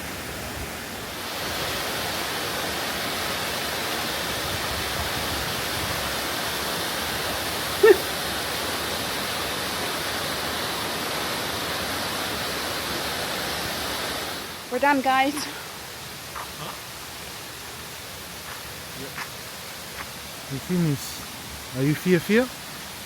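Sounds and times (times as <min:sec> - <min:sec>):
waterfall rushing: 0:00.0 - 0:23.0
brief pitched call: 0:07.8 - 0:08.1.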